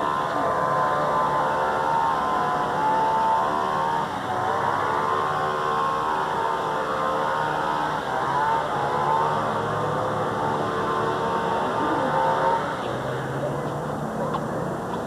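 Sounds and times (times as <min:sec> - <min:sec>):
engine running: 0:00.0 - 0:15.0.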